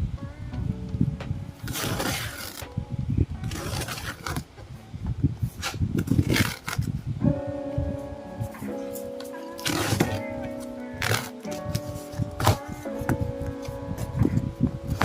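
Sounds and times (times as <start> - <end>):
packaging rustling and scraping: 1.7 - 2.6, 3.4 - 4.5, 5.5 - 6.9, 9.5 - 10.2, 11.0 - 12.7.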